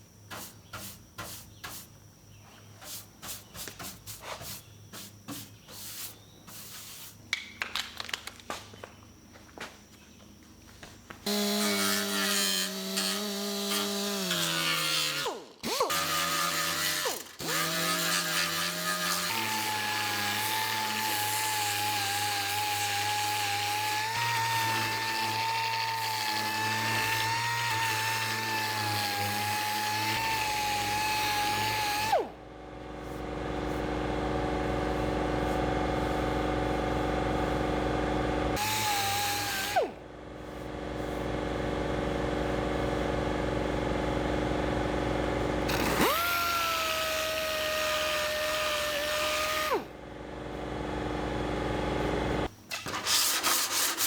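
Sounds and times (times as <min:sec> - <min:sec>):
power tool whining: 0:11.2 - 0:40.1, 0:40.7 - 0:53.0
low machine hum: 0:32.1 - 0:38.6, 0:39.4 - 0:52.5.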